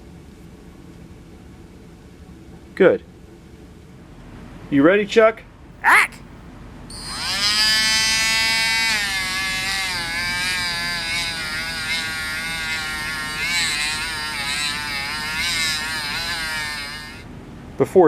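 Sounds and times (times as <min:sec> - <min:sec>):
polishing wheel motor whine: 0:08.1 - 0:17.2.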